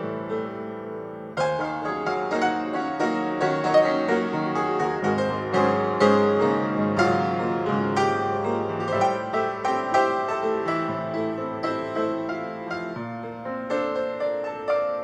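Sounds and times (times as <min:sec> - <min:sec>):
gentle solo piano: 0:00.0 - 0:15.0.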